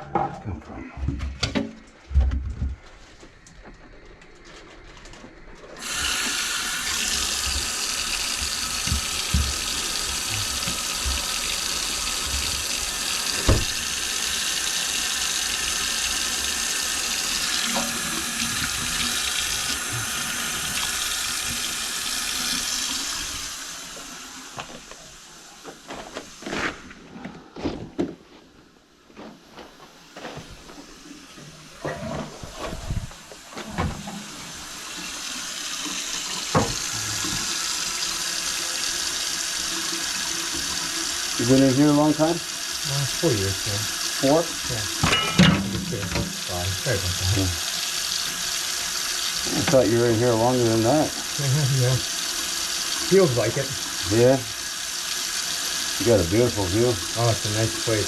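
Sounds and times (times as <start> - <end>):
tap running into a sink: 5.8 - 14.6, 15.4 - 25.0, 33.8 - 38.6, 39.3 - 42.3, 43.4 - 54.4.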